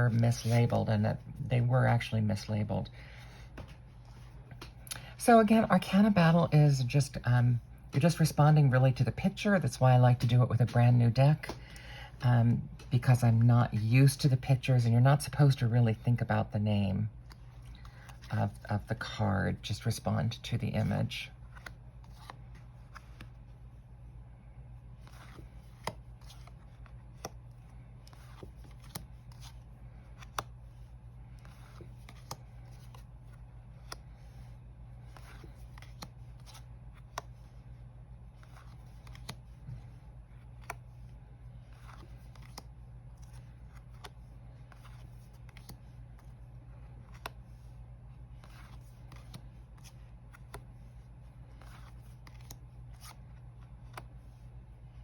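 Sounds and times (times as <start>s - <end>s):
cards sliding: 21.4s - 23.5s, 24.8s - 54.6s.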